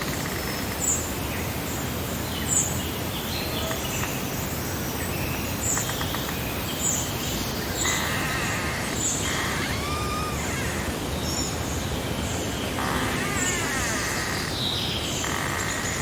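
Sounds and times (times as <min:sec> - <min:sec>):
birds chirping and singing: 0:05.1 - 0:16.0
breeze rushing: 0:07.4 - 0:16.0.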